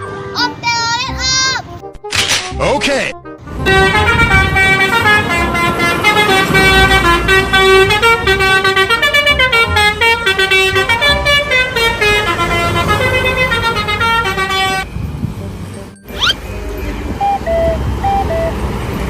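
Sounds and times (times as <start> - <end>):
bus engine running: 3.4 - 19.0
multi-note air horn melody: 3.6 - 14.9.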